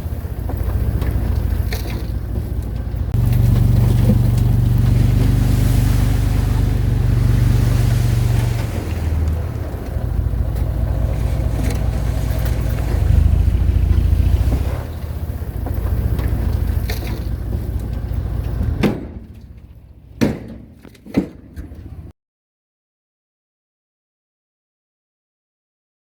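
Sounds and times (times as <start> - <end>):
diesel engine running: 0.0 - 22.1
sharp knocks: 18.6 - 19.4, 20.2 - 22.0.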